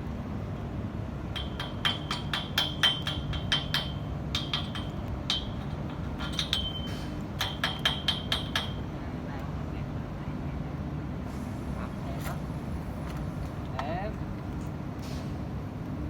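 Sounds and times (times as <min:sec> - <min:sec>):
hammer striking metal pipe: 0:01.3 - 0:08.8.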